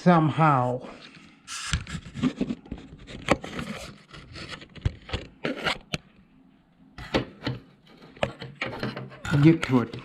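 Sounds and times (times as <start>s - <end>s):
scraping and rubbing in computer case: 1.5s - 5.9s, 7.8s - 10.0s.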